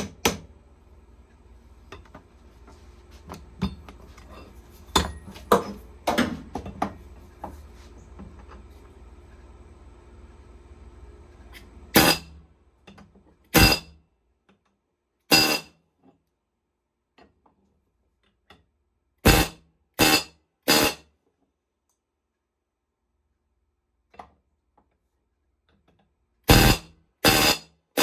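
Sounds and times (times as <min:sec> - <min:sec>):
hammer striking metal rivet: 0:12.0 - 0:12.2, 0:13.6 - 0:13.9, 0:15.3 - 0:15.7, 0:19.3 - 0:21.0, 0:26.5 - 0:27.6.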